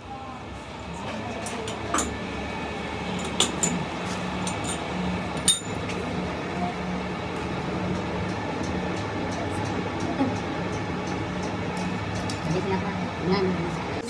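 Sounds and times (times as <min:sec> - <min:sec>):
metal clinking on metal: 0:01.5 - 0:02.2, 0:03.1 - 0:03.8, 0:04.4 - 0:04.8, 0:05.4 - 0:06.0.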